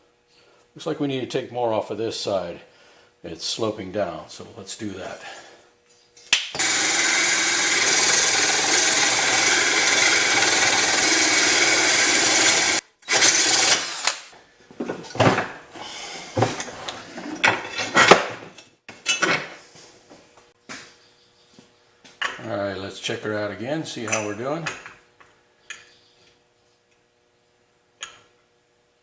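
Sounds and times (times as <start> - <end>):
drill grinding metal blade: 6.6 - 14.3.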